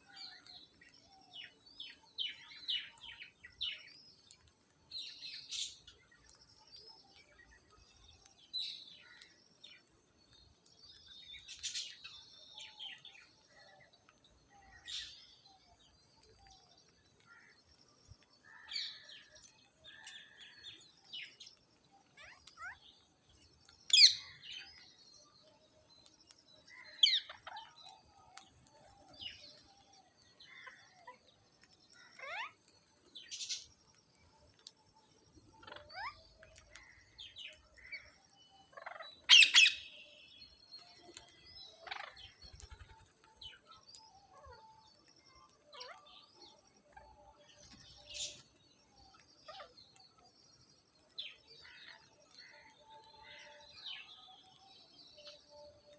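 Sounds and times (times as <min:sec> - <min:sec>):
parrots chirping and squawking: 0:32.1 - 0:32.6, 0:35.6 - 0:36.9, 0:38.6 - 0:39.9.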